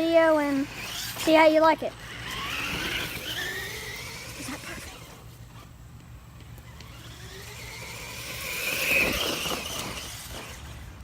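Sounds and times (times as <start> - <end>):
vehicle passing by: 6.8 - 11.0.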